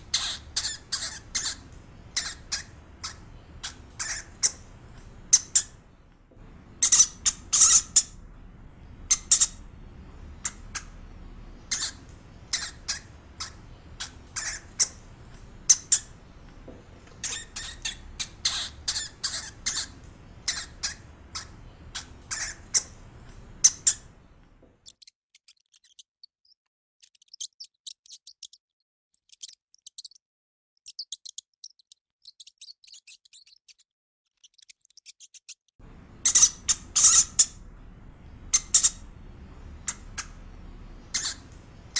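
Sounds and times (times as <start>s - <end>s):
hamster squeaking: 0.0s - 5.9s, 6.7s - 24.2s, 34.4s - 41.9s.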